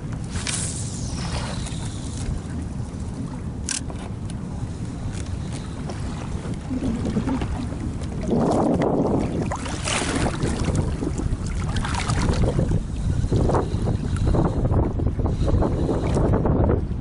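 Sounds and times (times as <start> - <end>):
wind buffeting microphone: 0.0 - 17.0
water splashing: 0.3 - 3.4, 5.0 - 13.0.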